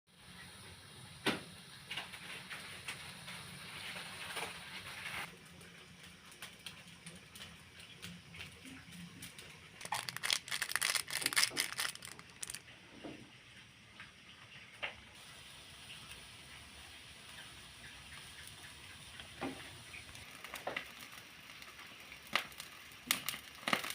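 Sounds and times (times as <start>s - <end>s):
crackling and clicking: 1.9s - 12.8s, 17.3s - 23.9s
handling taps and rustles: 9.8s - 13.2s.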